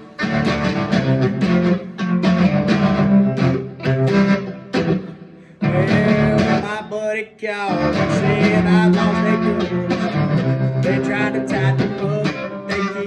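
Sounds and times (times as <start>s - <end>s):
country guitar music: 0.0s - 13.0s
person singing: 5.1s - 13.0s.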